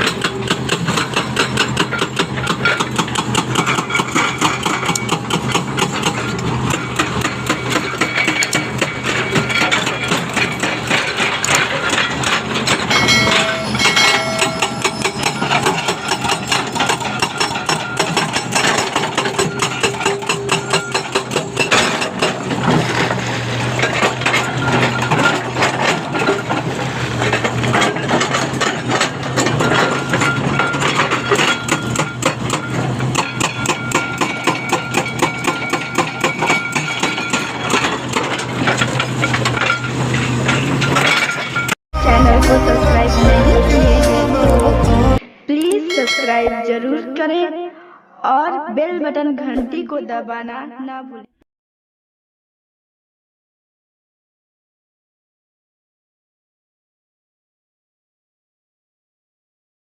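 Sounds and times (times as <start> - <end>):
diesel engine running: 0.0 - 41.0, 42.0 - 45.2
hydraulic breaker hammering: 0.0 - 41.8.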